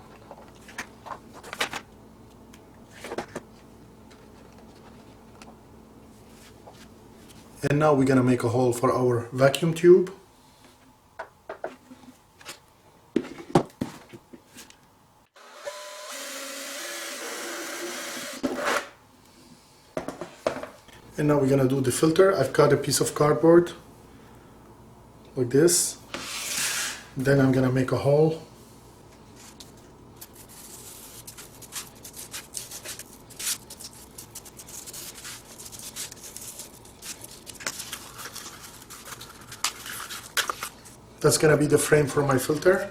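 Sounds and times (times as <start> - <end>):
power tool drilling plastic: 15.4 - 18.9
cardboard being cut: 17.5 - 18.9.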